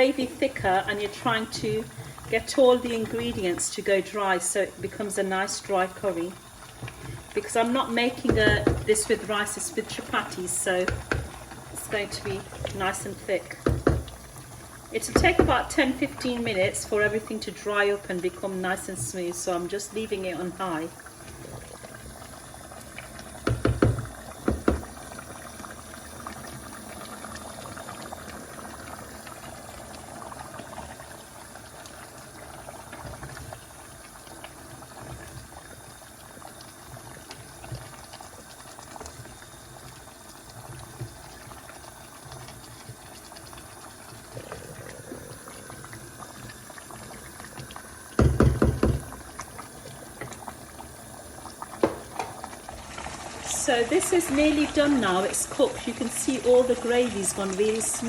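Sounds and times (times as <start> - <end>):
curry bubbling in a pot: 0.0 - 58.0
loud knocks: 13.6 - 14.1, 23.4 - 24.9, 48.2 - 49.1, 51.8 - 52.4.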